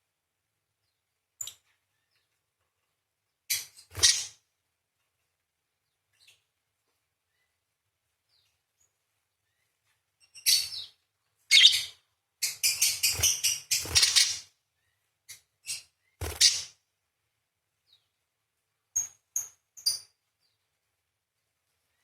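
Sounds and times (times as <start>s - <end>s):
parakeet screeching chatter: 4.0s - 4.3s, 11.5s - 14.5s, 16.4s - 16.7s.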